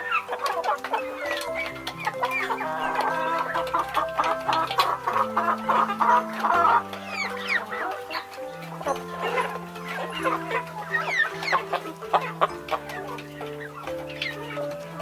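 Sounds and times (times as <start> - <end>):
chickens clucking: 0.0 - 15.0
music of held chords: 0.0 - 15.0.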